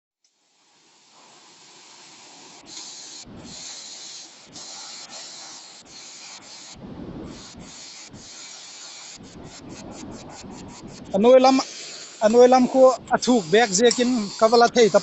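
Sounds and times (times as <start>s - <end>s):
low rumbles: 3.2s - 3.6s, 6.8s - 7.7s.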